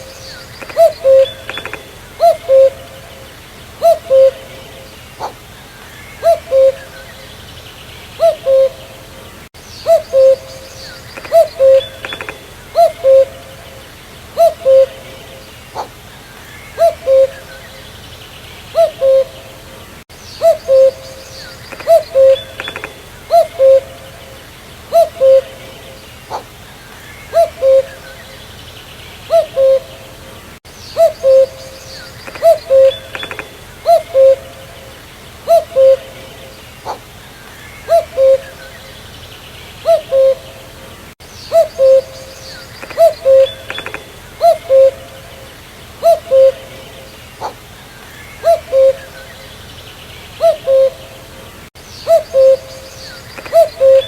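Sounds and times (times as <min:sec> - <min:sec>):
cuckoo calling: 0:00.0 - 0:07.4, 0:08.1 - 0:18.0, 0:18.7 - 0:28.5, 0:29.2 - 0:39.1, 0:39.8 - 0:49.7, 0:50.3 - 0:54.0
faint bird chirps: 0:00.0 - 0:51.2, 0:51.8 - 0:54.0.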